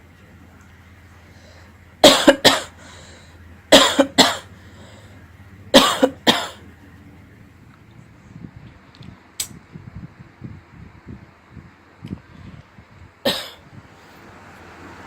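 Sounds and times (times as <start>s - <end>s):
person coughing: 2.0s - 2.8s, 3.7s - 4.5s, 5.7s - 6.6s, 13.3s - 13.6s.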